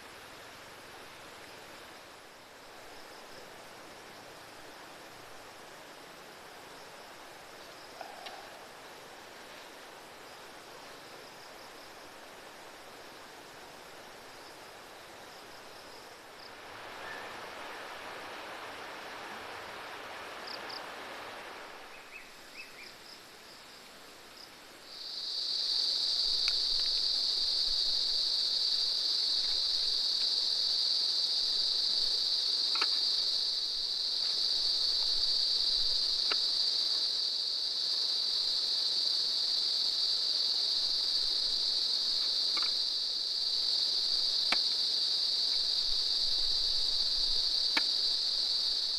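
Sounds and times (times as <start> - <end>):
insect high-pitched drone: 6.7 - 23.8, 24.4 - 48.9
faint clicks: 26.4 - 26.9, 32.7 - 33.0, 42.2 - 42.8.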